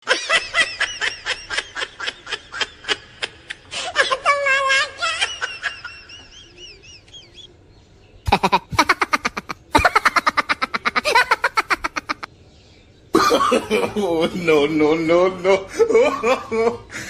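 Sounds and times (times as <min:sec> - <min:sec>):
rhythmic snickering laugh: 0:00.0 - 0:03.9, 0:05.2 - 0:07.4, 0:08.3 - 0:12.3
faint high chirps: 0:06.2 - 0:08.4.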